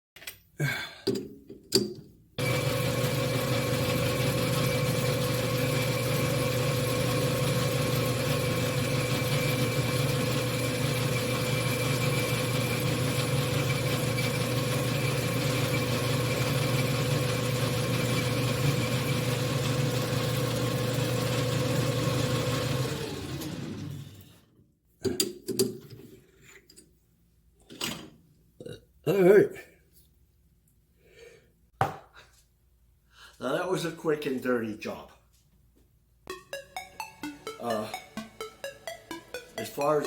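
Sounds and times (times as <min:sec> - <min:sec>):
lathe motor humming: 0:02.4 - 0:19.4.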